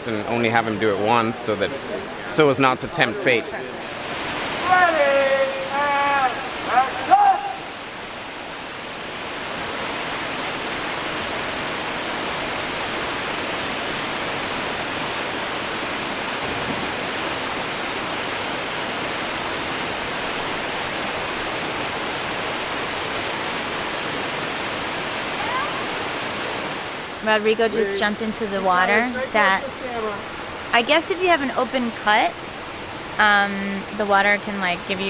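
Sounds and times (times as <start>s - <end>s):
waterfall pouring into pool: 3.8s - 27.2s.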